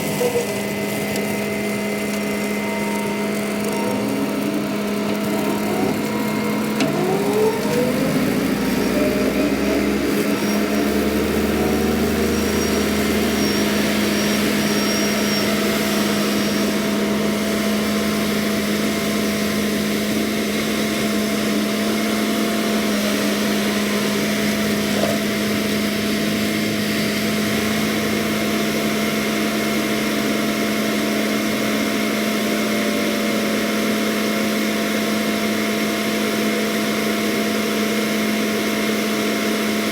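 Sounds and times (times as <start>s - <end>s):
skid steer engine and hydraulic drone: 0.0s - 39.9s.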